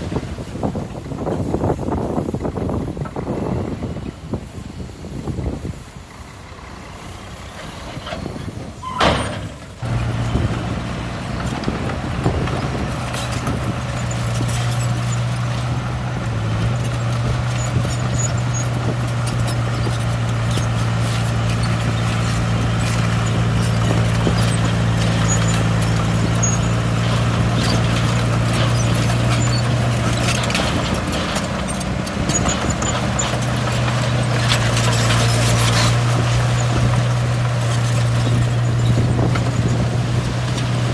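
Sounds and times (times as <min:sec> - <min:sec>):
heavy machinery diesel engine: 0:00.0 - 0:40.9
clanks and knocks: 0:16.6 - 0:39.8.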